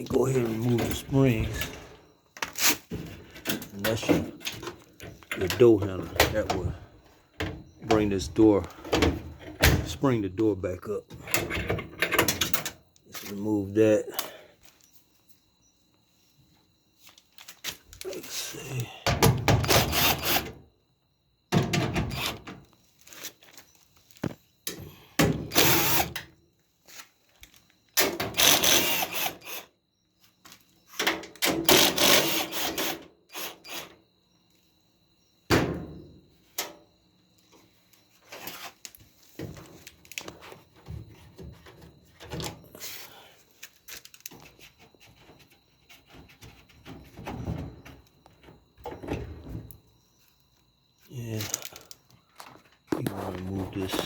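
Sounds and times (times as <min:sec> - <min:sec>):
power drill driving screws: 0:19.6 - 0:20.5, 0:25.5 - 0:26.2, 0:28.3 - 0:29.6, 0:31.7 - 0:33.9.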